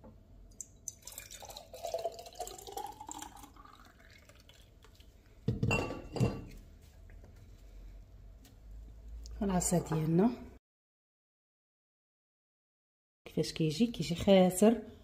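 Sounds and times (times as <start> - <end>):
juice pouring into container: 0.5 - 5.4.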